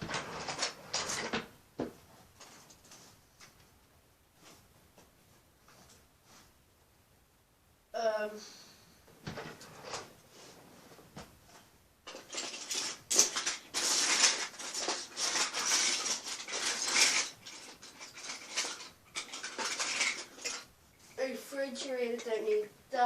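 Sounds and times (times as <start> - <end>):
plastic bricks clattering: 12.0 - 20.7.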